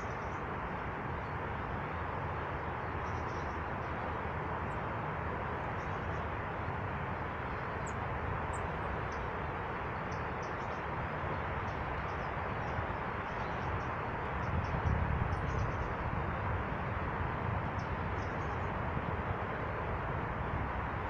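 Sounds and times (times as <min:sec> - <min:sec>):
steady rushing noise: 0:00.0 - 0:21.0.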